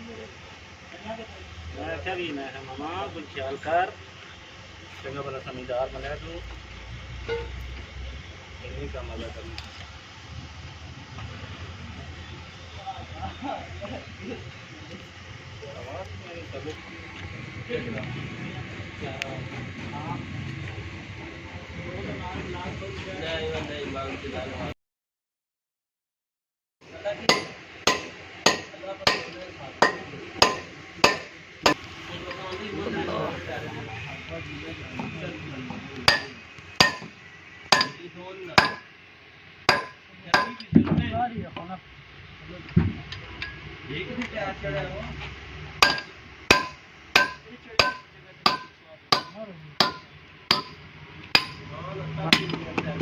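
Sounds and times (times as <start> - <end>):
hammer striking metal: 27.0 - 32.6, 36.1 - 38.0, 38.6 - 38.9, 39.7 - 40.8, 45.8 - 51.7, 52.3 - 52.8.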